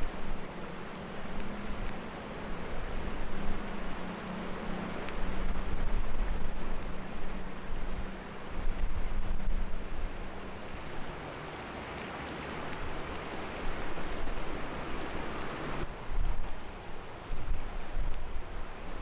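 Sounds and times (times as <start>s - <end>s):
faint clicks: 1.2s - 2.8s, 4.8s - 5.3s, 11.6s - 14.2s
wind on microphone: 1.2s - 11.2s, 12.6s - 19.0s.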